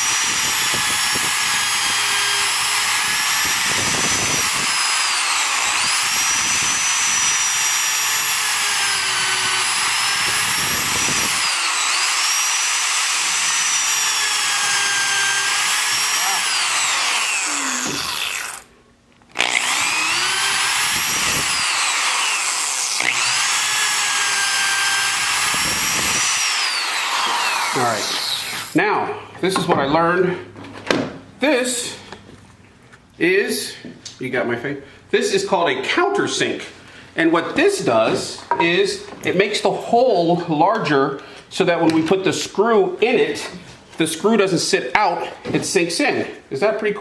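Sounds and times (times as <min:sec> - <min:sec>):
electric drill boring into wood: 0:00.0 - 0:18.7, 0:19.3 - 0:28.8.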